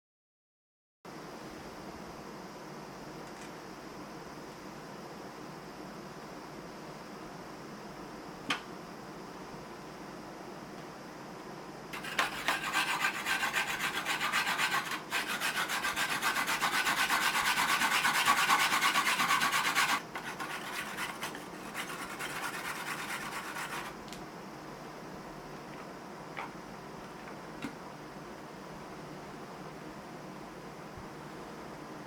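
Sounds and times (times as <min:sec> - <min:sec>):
onion rasping on grater: 0:12.0 - 0:24.0.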